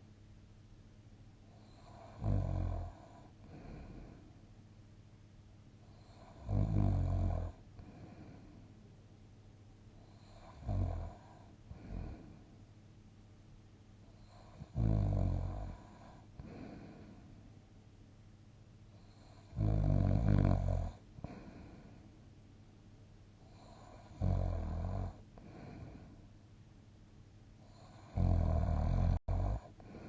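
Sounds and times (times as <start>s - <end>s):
person snoring: 1.6s - 4.2s, 5.9s - 8.6s, 10.1s - 12.5s, 14.2s - 17.2s, 19.0s - 22.0s, 23.5s - 26.1s, 27.6s - 30.0s
soft breath out: 3.4s - 4.4s, 7.8s - 8.8s, 16.2s - 17.4s, 21.2s - 22.2s, 25.4s - 26.3s, 29.7s - 30.0s.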